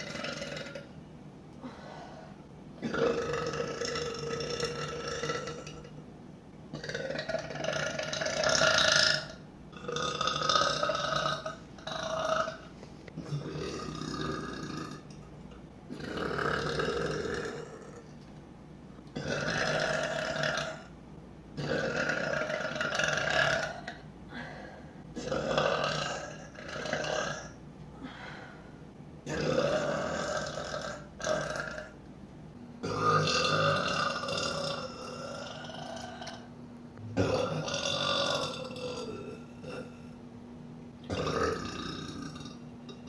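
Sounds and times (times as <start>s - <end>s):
woman burping loudly: 0.0s - 0.9s, 2.8s - 5.9s, 6.7s - 12.6s, 13.2s - 15.2s, 15.9s - 18.0s, 29.3s - 32.0s, 32.8s - 36.5s, 37.1s - 40.1s, 41.1s - 43.0s.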